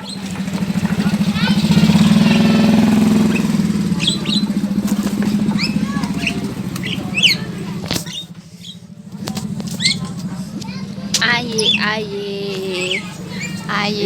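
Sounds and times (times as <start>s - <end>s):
caged birds chirping: 0.0s - 14.0s
low engine-like hum: 0.0s - 14.0s.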